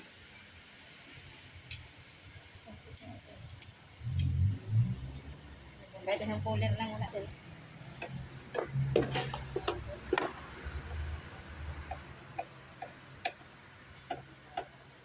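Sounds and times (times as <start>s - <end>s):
low steady hum: 0.0s - 15.0s
sharp clicks and light taps: 11.8s - 14.8s.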